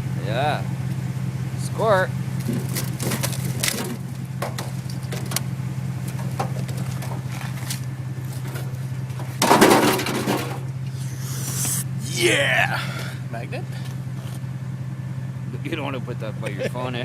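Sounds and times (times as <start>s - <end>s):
truck engine idling: 0.0s - 17.0s
loud clatter: 2.4s - 5.5s, 6.1s - 10.7s.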